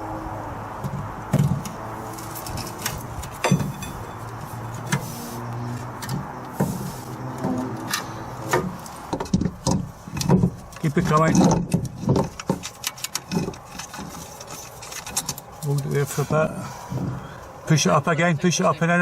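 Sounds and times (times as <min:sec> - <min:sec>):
metallic knocks and clunks: 0:00.8 - 0:01.8, 0:02.4 - 0:05.0, 0:05.8 - 0:15.5.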